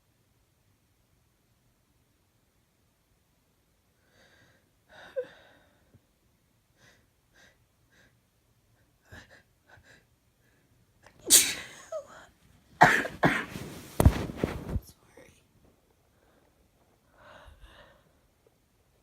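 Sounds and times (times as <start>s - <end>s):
woman sneezing: 11.3s - 12.1s.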